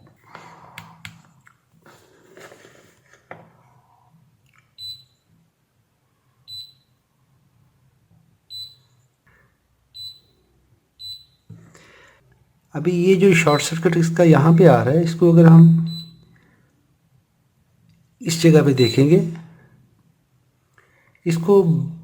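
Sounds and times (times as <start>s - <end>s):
multimeter high-pitched beeps: 4.8s - 5.2s, 6.5s - 7.0s, 8.5s - 9.0s, 10.0s - 10.4s, 11.0s - 11.4s, 13.5s - 13.8s, 15.6s - 16.2s, 18.8s - 19.2s.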